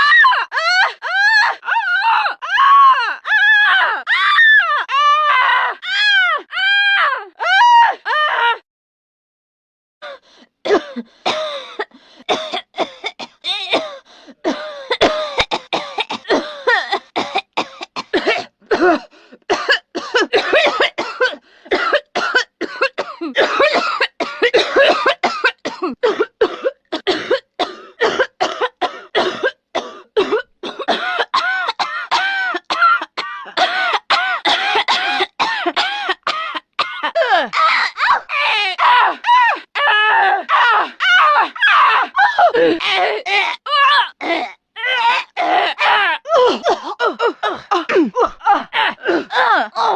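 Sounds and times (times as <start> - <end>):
woman coughing: 10.7 - 38.0, 46.4 - 49.9.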